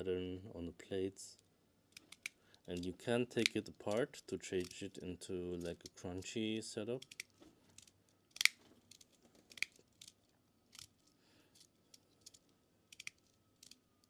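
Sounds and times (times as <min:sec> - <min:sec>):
magnetic plates snapping together: 0:08.4 - 0:10.1.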